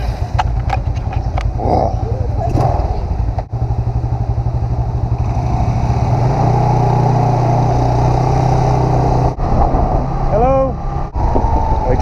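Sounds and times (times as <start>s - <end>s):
scooter engine running: 0.0s - 9.3s.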